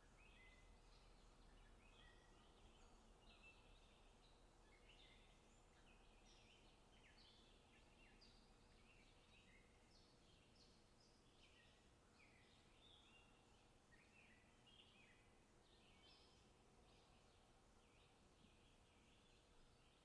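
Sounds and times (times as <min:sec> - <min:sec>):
low background hiss: 0:00.0 - 0:20.0.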